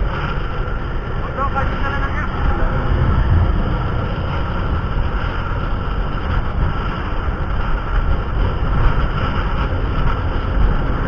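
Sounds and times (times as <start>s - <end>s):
moving vehicle rumble: 0.0s - 11.0s.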